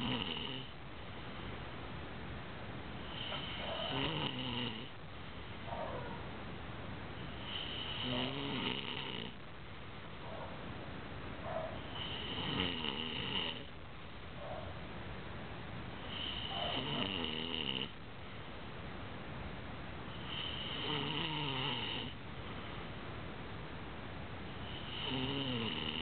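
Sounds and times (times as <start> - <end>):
woman snoring: 0.0 - 0.8, 3.0 - 4.9, 7.3 - 9.4, 11.9 - 13.7, 16.1 - 17.9, 20.2 - 22.2, 24.6 - 26.0
faint breaths: 3.0 - 4.1, 7.1 - 8.4, 16.0 - 17.1, 20.1 - 21.0.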